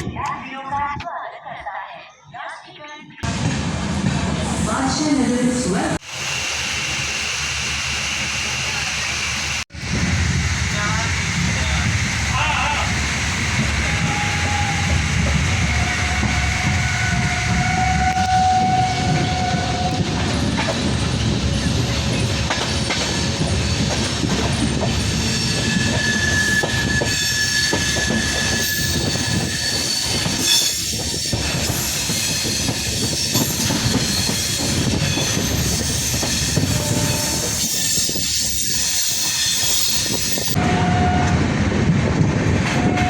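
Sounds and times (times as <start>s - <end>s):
train wheels rumbling on rails: 3.2s - 43.0s
high wheel squeal: 13.5s - 20.0s, 24.9s - 41.1s.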